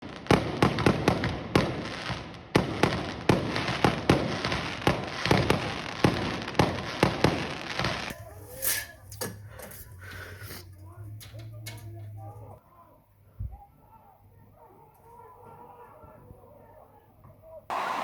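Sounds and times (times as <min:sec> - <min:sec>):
fireworks bangs: 0:00.0 - 0:08.7, 0:17.7 - 0:18.0.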